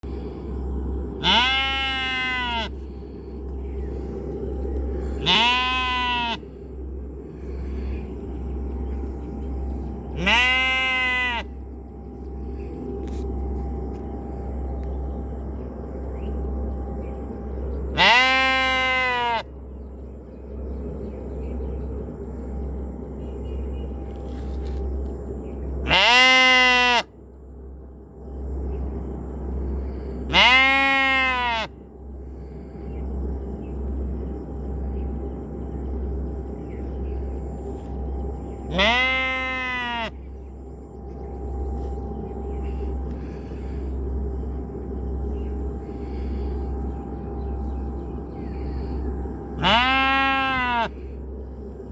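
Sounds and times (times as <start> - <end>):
steady low rumble: 0.0 - 51.9
sheep bleating: 1.2 - 2.8, 5.2 - 6.4, 10.2 - 11.6, 18.0 - 19.5, 25.9 - 27.1, 30.3 - 31.7, 38.7 - 40.2, 49.6 - 51.0.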